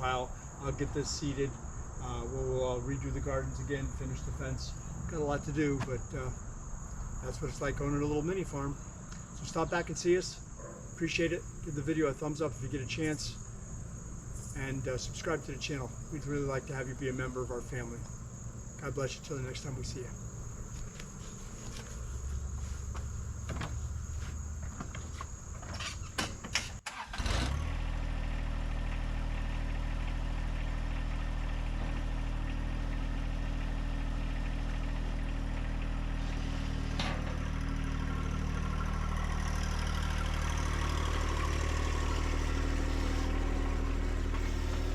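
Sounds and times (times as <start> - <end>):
crickets whining: 0.0 - 44.9
engine running: 11.5 - 25.7, 26.4 - 44.9.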